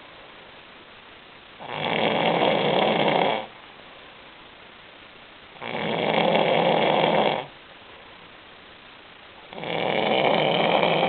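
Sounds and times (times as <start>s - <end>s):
person snoring: 1.6s - 3.5s, 5.6s - 7.5s, 9.5s - 11.0s.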